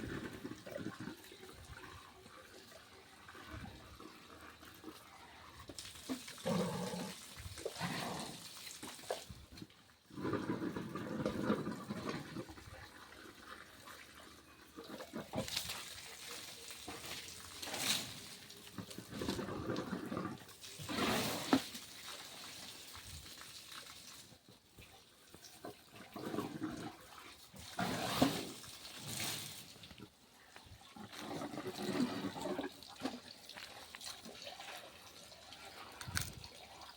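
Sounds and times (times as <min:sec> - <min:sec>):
elephant splashing water: 0:14.8 - 0:23.9, 0:26.0 - 0:30.2.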